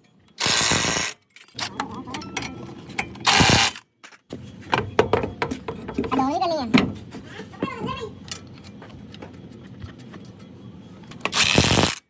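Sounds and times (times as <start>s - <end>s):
air tool bursts: 0.4s - 1.2s, 3.3s - 3.8s, 11.3s - 12.0s
ratchet clicks: 0.4s - 1.2s, 3.3s - 3.8s, 11.3s - 12.0s
tool knocks: 4.3s - 7.0s.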